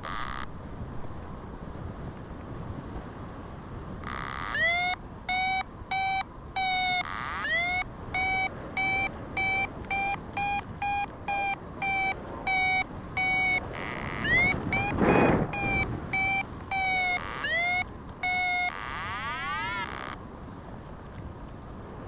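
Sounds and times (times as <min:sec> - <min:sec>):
wind noise: 0:00.0 - 0:22.0
variometer beeping: 0:04.0 - 0:20.2.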